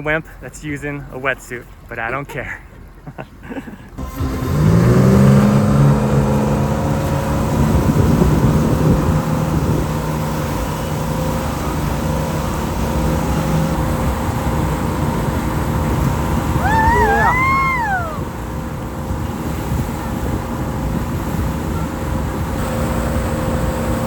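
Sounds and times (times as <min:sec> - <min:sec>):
boat engine running: 0:03.8 - 0:24.0
water rushing: 0:04.0 - 0:21.7
wind noise: 0:04.6 - 0:24.0
high wavering call: 0:16.6 - 0:18.4.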